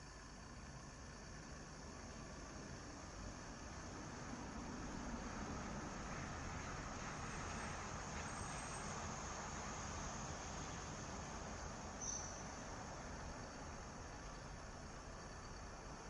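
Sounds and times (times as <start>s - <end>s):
outdoor background hiss and hum: 0.0s - 16.0s.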